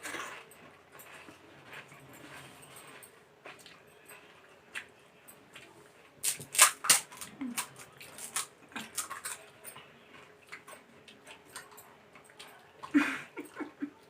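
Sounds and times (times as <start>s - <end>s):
crisp shells crunching: 6.2s - 9.4s.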